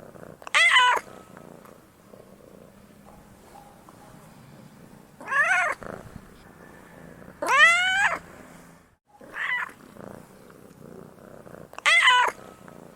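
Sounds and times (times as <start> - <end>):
cat purring: 0.0 - 8.6, 9.2 - 12.9
cat meowing: 0.5 - 1.1, 5.2 - 5.8, 7.4 - 8.2, 9.3 - 9.8, 11.8 - 12.4.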